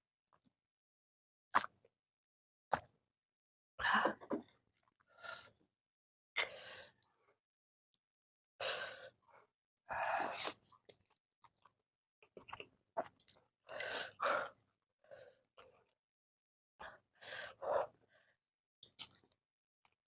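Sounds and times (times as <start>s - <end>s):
chewing and slurping noodles: 12.3s - 14.0s.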